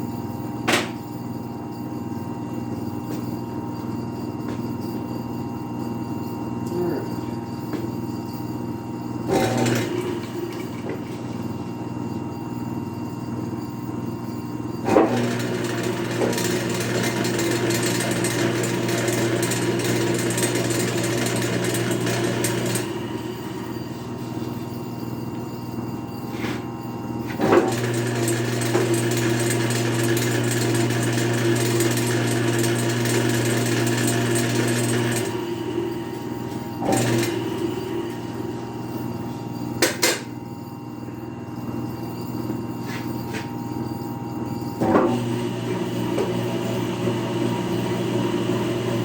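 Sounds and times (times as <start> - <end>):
electric planer motor humming: 45.1 - 49.0.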